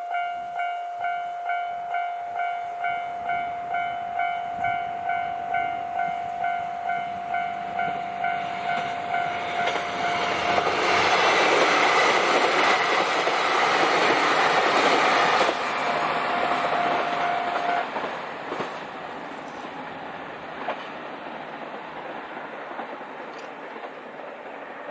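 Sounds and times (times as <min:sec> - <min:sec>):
level-crossing alarm bell dinging: 0:00.0 - 0:10.7
diesel train passing: 0:00.0 - 0:24.9.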